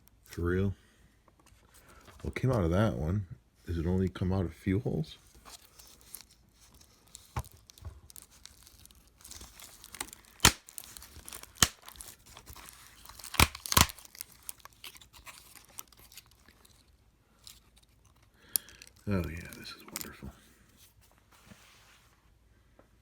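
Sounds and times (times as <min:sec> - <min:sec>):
plastic snaps and clicks: 0:13.2 - 0:14.0.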